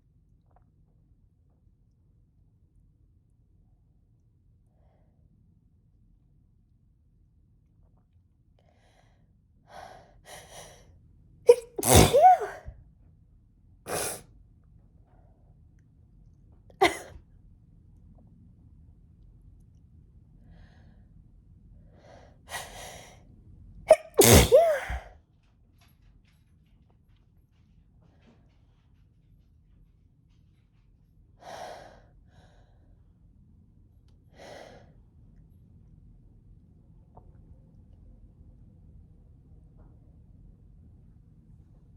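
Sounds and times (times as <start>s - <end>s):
woman breathing heavily: 8.7s - 10.9s, 11.5s - 12.7s, 13.9s - 14.2s, 21.9s - 23.2s, 31.4s - 33.0s, 34.3s - 35.0s
woman hitching in-breaths: 11.5s - 12.7s, 23.9s - 25.1s
woman sneezing: 11.5s - 12.7s, 13.9s - 14.2s, 16.8s - 17.2s, 23.9s - 25.1s.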